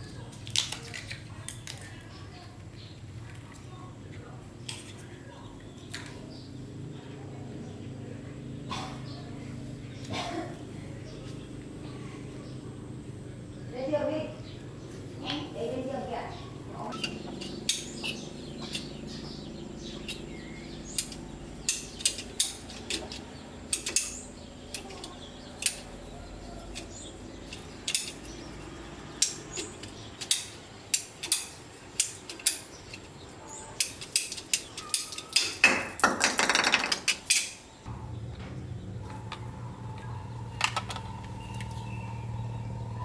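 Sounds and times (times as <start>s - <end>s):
rapid metal rattling: 15.6s - 37.7s
metal tools clinking and knocking: 16.6s - 37.7s.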